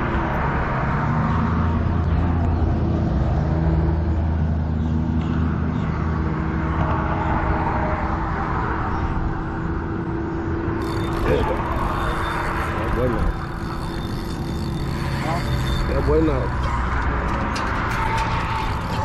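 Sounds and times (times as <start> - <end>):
engine humming: 8.6 - 19.0.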